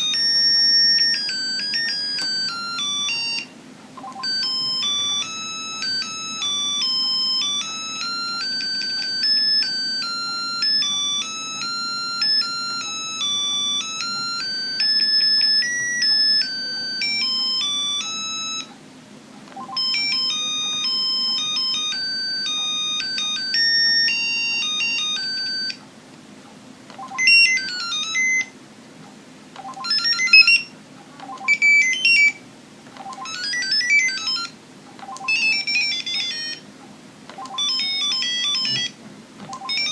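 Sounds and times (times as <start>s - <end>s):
phone ringtone beeping melody: 0.0s - 18.7s, 19.6s - 25.8s, 26.9s - 28.5s, 29.6s - 32.4s, 33.0s - 36.6s, 37.3s - 39.9s
phone ringtone tune: 0.0s - 18.7s, 19.6s - 25.8s, 26.9s - 28.5s, 29.6s - 32.4s, 33.0s - 36.6s, 37.3s - 39.9s.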